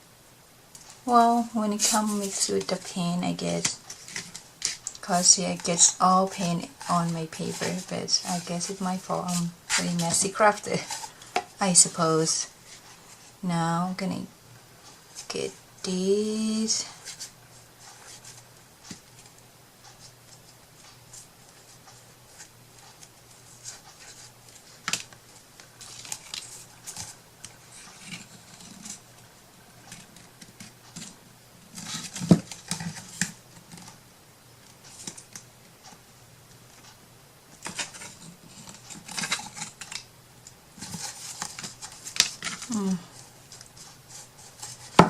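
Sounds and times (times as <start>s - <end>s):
paper rustling: 1.7s - 3.0s, 19.9s - 29.0s, 37.5s - 40.1s, 40.8s - 45.0s.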